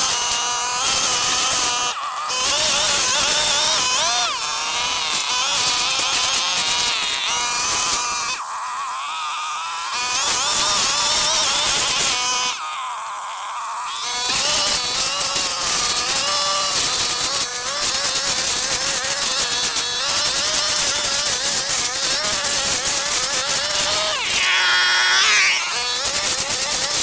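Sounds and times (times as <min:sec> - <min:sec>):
brush cutter engine running: 0:14.0 - 0:27.0.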